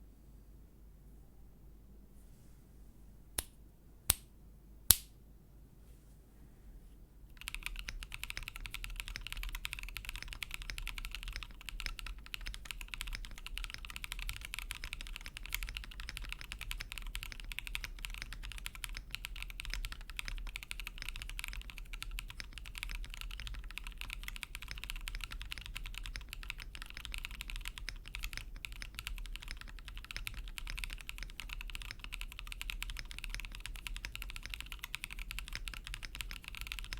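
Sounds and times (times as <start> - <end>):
sharp clicks: 3.4 - 4.3, 4.9 - 5.2
fast mechanical keyboard typing: 7.4 - 36.9.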